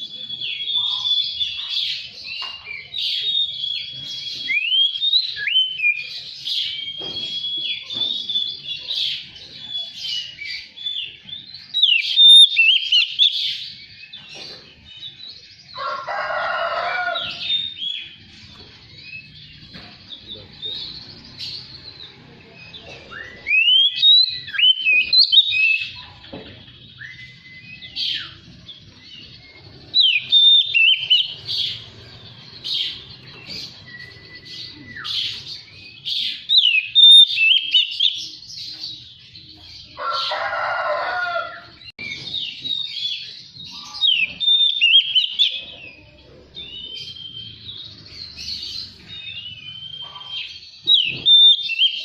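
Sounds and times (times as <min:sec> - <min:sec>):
bird singing whistled phrases: 0:02.8 - 0:08.9, 0:09.7 - 0:13.5, 0:22.6 - 0:26.1, 0:26.9 - 0:28.5, 0:29.2 - 0:31.5, 0:32.9 - 0:38.4, 0:42.1 - 0:45.7, 0:46.6 - 0:48.4, 0:49.1 - 0:52.0.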